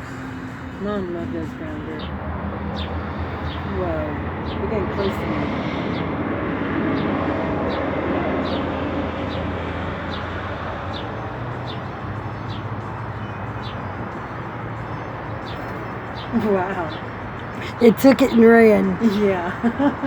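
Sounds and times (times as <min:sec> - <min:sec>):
traffic noise: 0:00.0 - 0:20.0
sparrow chirping: 0:07.0 - 0:19.2.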